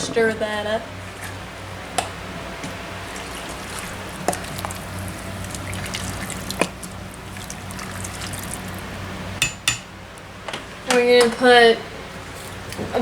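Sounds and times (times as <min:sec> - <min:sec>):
liquid sloshing: 0:01.0 - 0:09.4, 0:12.1 - 0:13.0.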